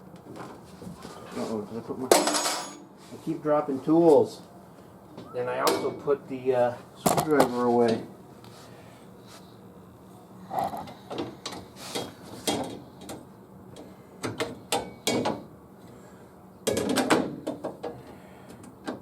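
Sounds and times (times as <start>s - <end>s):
metal tools clinking and rattling: 2.2s - 2.8s.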